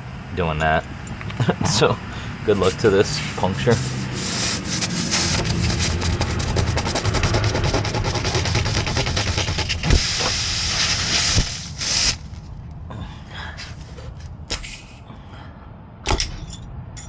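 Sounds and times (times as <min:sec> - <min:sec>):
air hissing out of tire: 0:02.0 - 0:06.6, 0:09.8 - 0:12.5, 0:13.2 - 0:15.1
tire plug tool scraping rubber: 0:02.5 - 0:15.0.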